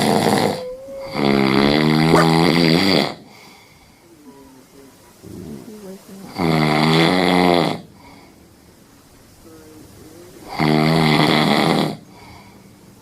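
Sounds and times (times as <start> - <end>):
dog snoring: 0.0 - 3.2
quiet breathing: 3.2 - 6.4, 7.9 - 8.7, 12.0 - 13.0.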